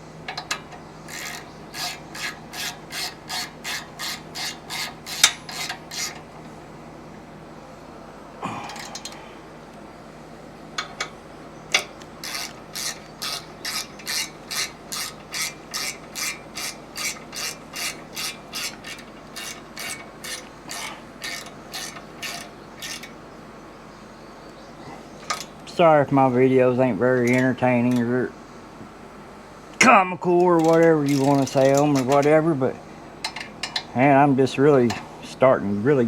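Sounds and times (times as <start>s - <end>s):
ratchet wrench clicking: 0.4s - 6.2s, 11.7s - 23.1s, 30.6s - 32.3s.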